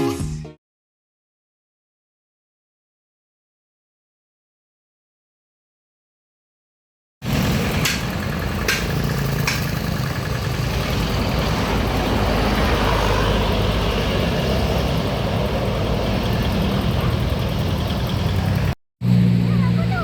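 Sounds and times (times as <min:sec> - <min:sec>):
bus engine running: 0:07.2 - 0:20.0
road noise: 0:07.2 - 0:20.0.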